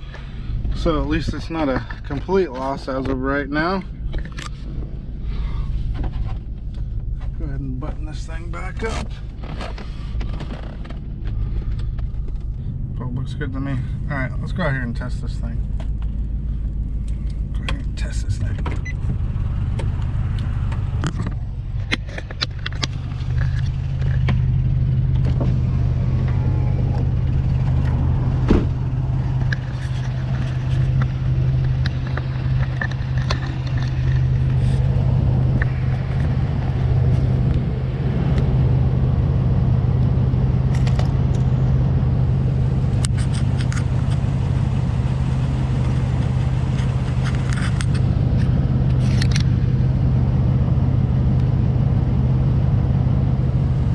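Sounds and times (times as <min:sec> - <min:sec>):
engine low drone: 0:00.0 - 0:53.9
clicks and rattles: 0:21.0 - 0:24.5, 0:29.2 - 0:34.9, 0:43.0 - 0:44.3, 0:45.8 - 0:49.6.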